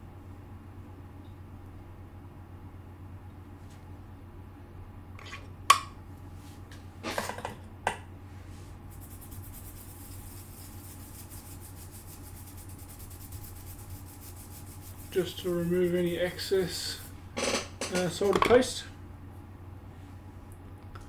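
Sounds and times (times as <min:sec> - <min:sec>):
brush scrubbing hiss: 0:08.9 - 0:17.3.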